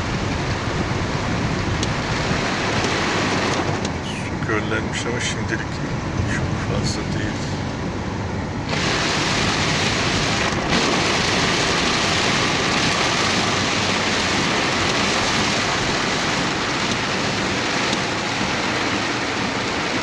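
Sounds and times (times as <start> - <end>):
heavy rain pouring: 0.0 - 8.0, 8.6 - 20.0.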